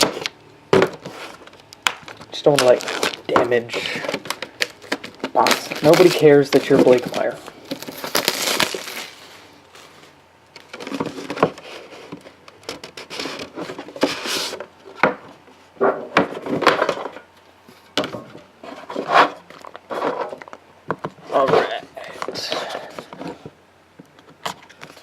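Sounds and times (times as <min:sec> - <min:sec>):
card box rubbing and scraping: 0:18.6 - 0:20.4.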